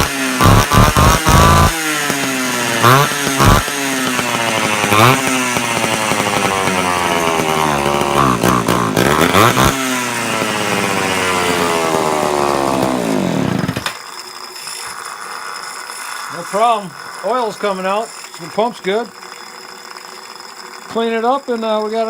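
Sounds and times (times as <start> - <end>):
chainsaw engine revving: 0.0 - 22.0.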